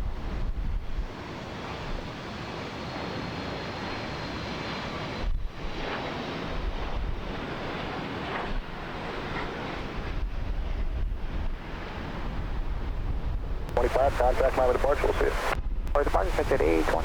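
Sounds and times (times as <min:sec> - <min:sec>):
wind on microphone: 0:00.0 - 0:01.2, 0:05.2 - 0:17.0
jet airliner engines roaring: 0:00.0 - 0:17.0.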